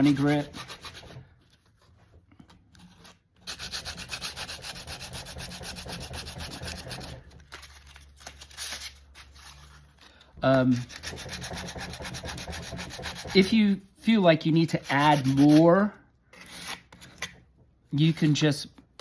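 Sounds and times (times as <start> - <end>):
sandpaper scratching strokes: 3.5 - 7.2, 14.8 - 15.7.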